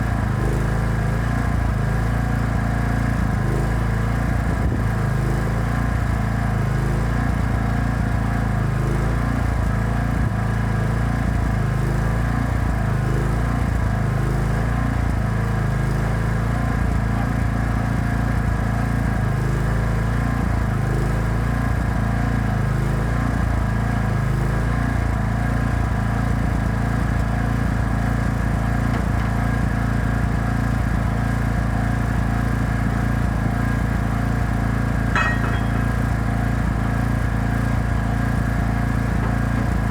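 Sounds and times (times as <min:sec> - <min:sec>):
welding generator engine hum: 0:25.2 - 0:36.5.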